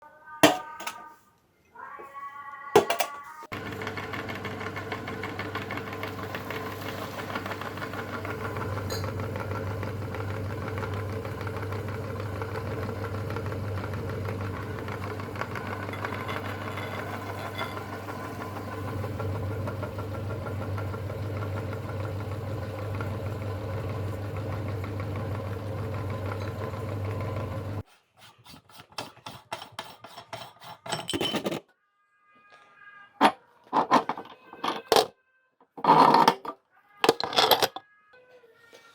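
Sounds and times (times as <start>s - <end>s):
electric meat grinder motor hum: 3.5s - 27.8s.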